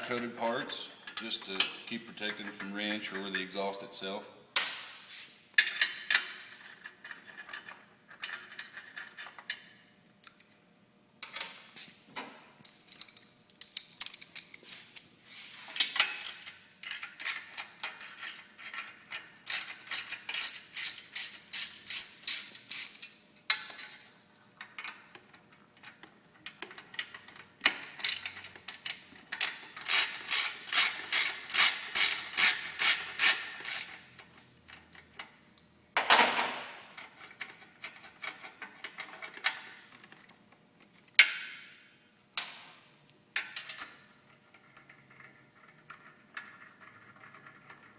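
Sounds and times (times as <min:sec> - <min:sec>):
hand ratchet clicking: 0:19.5 - 0:23.1, 0:28.0 - 0:34.0.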